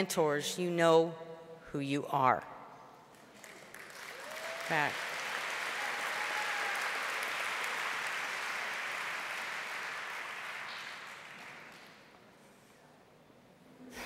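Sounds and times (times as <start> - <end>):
audience applauding: 3.3 - 12.2.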